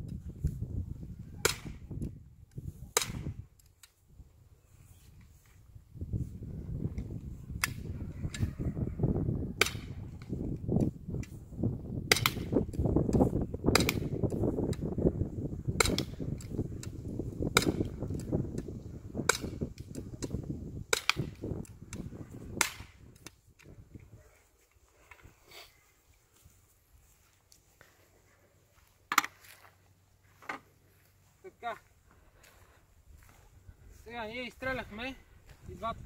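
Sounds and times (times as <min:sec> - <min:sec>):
paintball pistol shots: 0:01.4 - 0:01.9, 0:03.0 - 0:03.4, 0:09.6 - 0:10.0, 0:12.1 - 0:12.6, 0:13.7 - 0:14.3, 0:15.7 - 0:16.5, 0:17.5 - 0:18.2, 0:20.9 - 0:21.4, 0:22.6 - 0:23.0.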